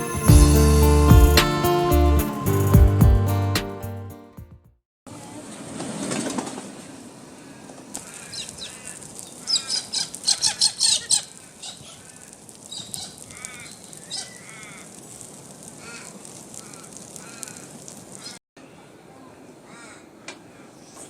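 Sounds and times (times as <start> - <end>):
harsh bird calls: 7.4 - 14.9
soft arched bird calls: 7.5 - 15.0.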